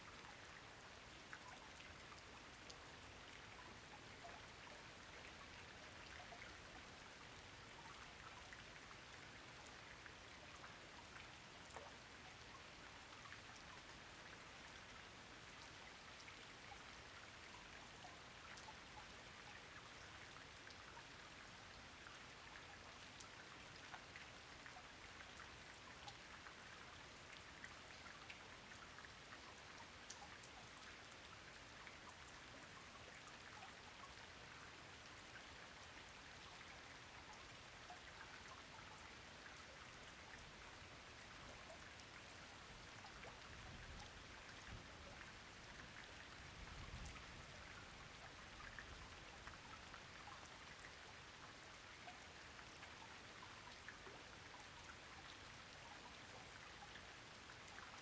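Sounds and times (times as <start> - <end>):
soft steady rainfall: 0.0 - 58.0.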